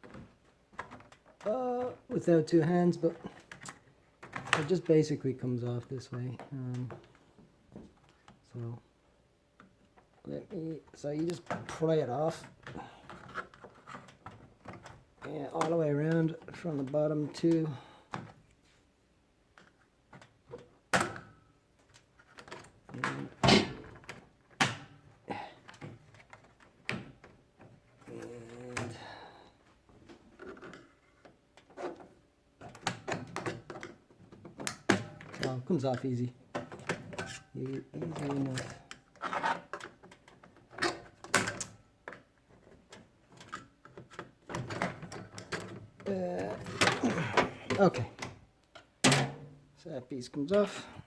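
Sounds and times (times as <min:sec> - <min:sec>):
plastic rattling and rubbing: 0:09.6 - 0:18.4, 0:29.6 - 0:49.0.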